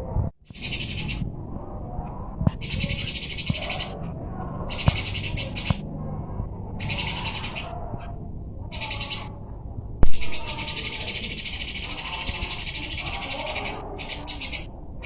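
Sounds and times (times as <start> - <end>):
sparrows chirping harshly: 0.5 - 9.4, 10.2 - 15.0.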